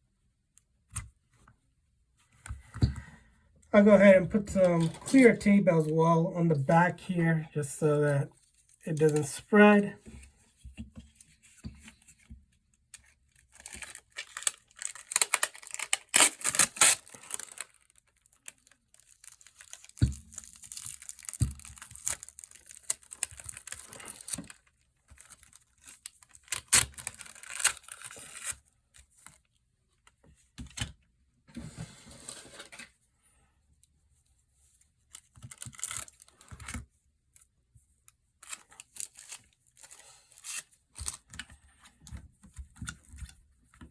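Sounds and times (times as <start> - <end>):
tape crinkling: 13.3 - 28.6, 35.1 - 36.7, 38.4 - 41.4
adhesive tape pulled and torn: 13.6 - 17.7, 26.5 - 28.5.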